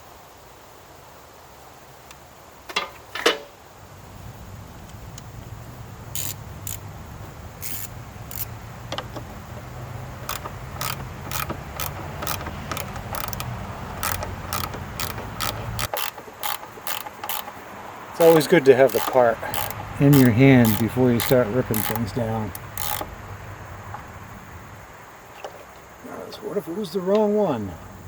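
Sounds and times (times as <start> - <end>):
ratchet wrench clicking: 6.1 - 6.9, 7.6 - 9.4, 10.2 - 23.2.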